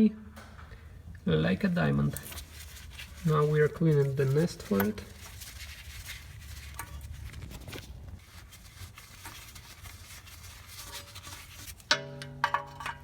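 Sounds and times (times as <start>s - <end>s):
scratchy scraping: 1.7s - 11.8s.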